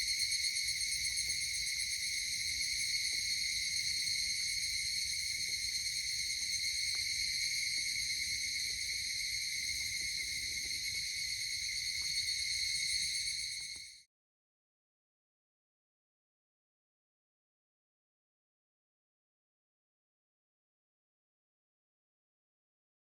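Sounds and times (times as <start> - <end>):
insect chorus drone: 0.0 - 14.1.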